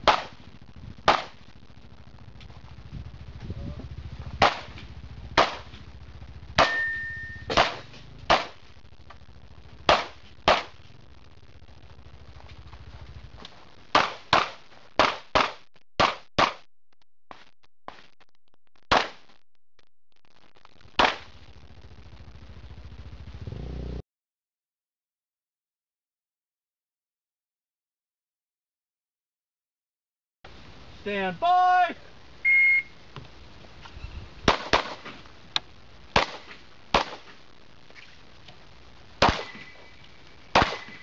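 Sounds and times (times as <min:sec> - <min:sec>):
pistol shots: 0:00.0 - 0:00.4, 0:01.1 - 0:01.4, 0:04.4 - 0:04.8, 0:05.4 - 0:05.8, 0:06.6 - 0:08.6, 0:09.9 - 0:10.8, 0:13.9 - 0:16.7, 0:18.9 - 0:19.2, 0:21.0 - 0:21.3, 0:34.4 - 0:35.1, 0:36.2 - 0:37.4, 0:39.2 - 0:39.8, 0:40.5 - 0:41.0
short steady beep: 0:06.7 - 0:07.5, 0:32.4 - 0:33.0.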